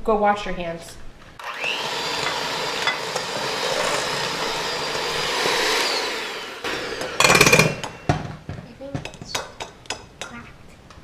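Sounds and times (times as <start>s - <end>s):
electric kitchen mixer whine: 1.4s - 8.1s.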